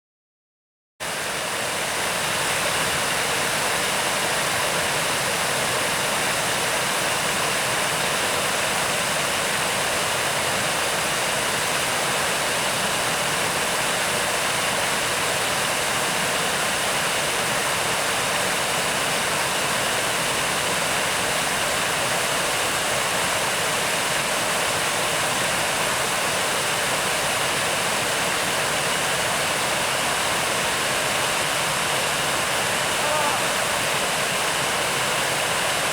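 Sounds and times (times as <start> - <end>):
floodwater running: 1.1 - 35.9
torrential downpour: 8.0 - 35.9.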